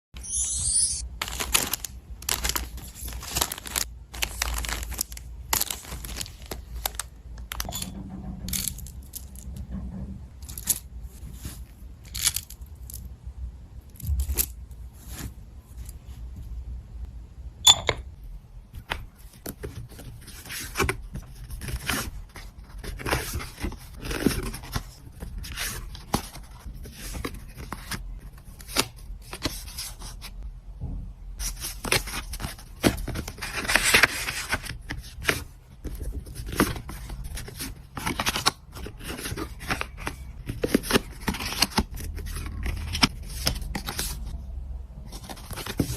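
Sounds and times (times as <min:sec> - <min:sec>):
paper and packaging rustling: 0:01.1 - 0:07.7, 0:18.8 - 0:30.3, 0:31.4 - 0:44.4, 0:45.0 - 0:45.9.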